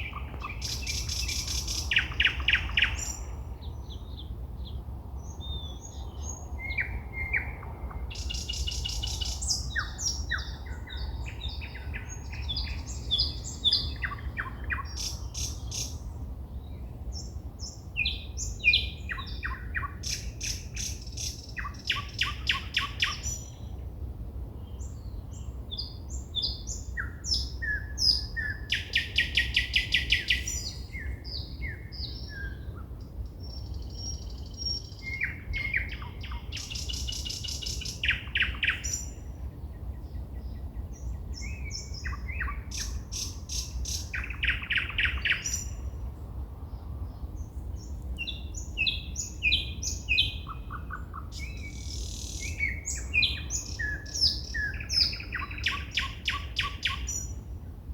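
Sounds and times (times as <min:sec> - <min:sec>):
steady low background rumble: 0:00.0 - 0:55.6
songbirds singing: 0:00.0 - 0:57.9.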